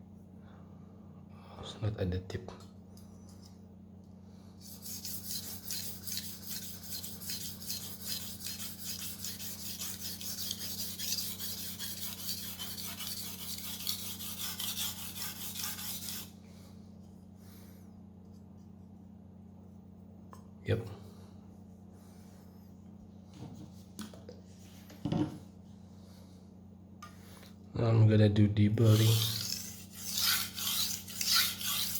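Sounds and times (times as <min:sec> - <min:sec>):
knife scraping on sharpening stone: 0:04.6 - 0:16.3, 0:29.0 - 0:31.9.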